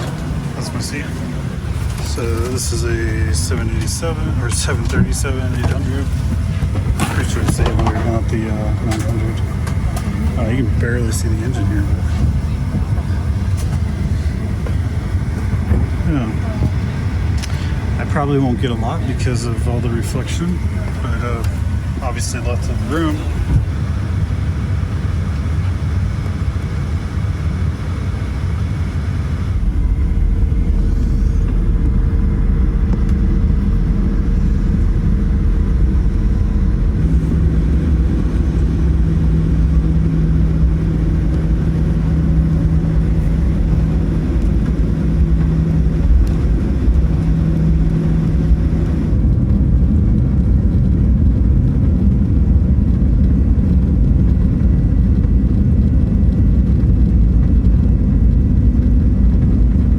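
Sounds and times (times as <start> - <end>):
jet engines rumbling in cabin: 0.0 - 59.9.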